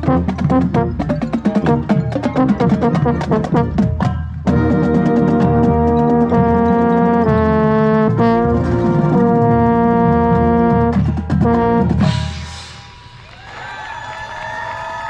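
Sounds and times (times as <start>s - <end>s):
marching band brass chords: 0.0s - 12.8s
crowd voices and whoops: 13.2s - 15.0s.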